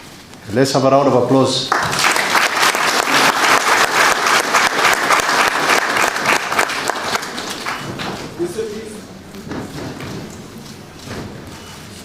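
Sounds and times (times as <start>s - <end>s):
audience applause: 1.7s - 8.8s.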